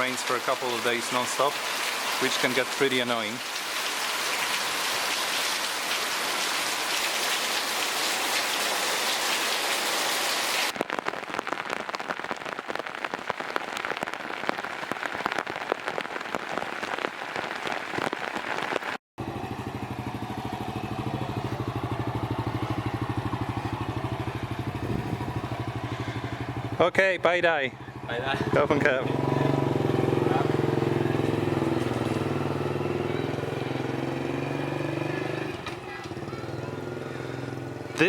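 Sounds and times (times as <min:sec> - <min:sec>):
rain pouring: 0:00.0 - 0:19.0, 0:19.8 - 0:37.8
raindrops pattering on surfaces: 0:00.0 - 0:19.0, 0:29.8 - 0:32.8
motorcycle engine idling: 0:19.2 - 0:33.8, 0:35.8 - 0:38.0.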